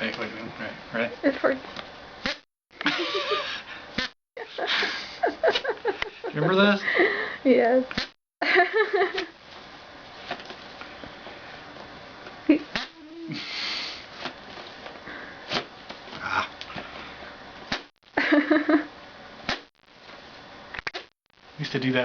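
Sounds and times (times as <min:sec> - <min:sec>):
breathy hiss of escaping air: 0:13.3 - 0:14.2.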